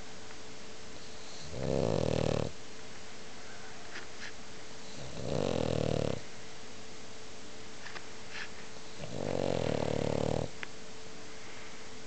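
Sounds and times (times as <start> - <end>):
dog snoring loudly: 1.1 - 2.6, 4.9 - 6.2, 8.9 - 10.6.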